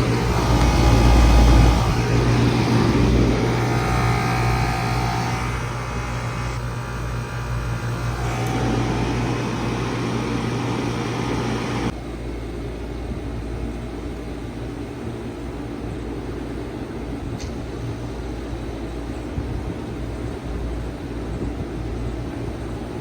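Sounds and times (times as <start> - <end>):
compressor hum: 0.0 - 12.0
fan whoosh: 0.0 - 12.0.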